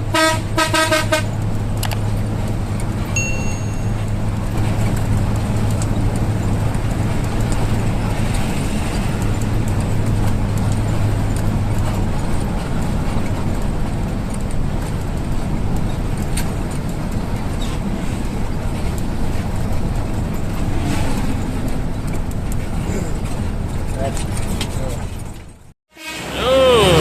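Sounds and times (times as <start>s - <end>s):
bus engine running: 0.0s - 27.0s
traffic noise: 0.0s - 27.0s
short high beep: 3.2s - 4.0s.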